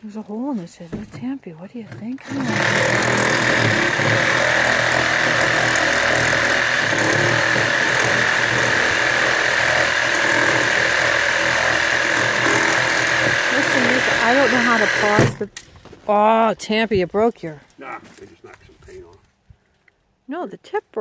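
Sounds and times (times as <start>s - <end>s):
reciprocating saw cutting: 2.2s - 15.5s.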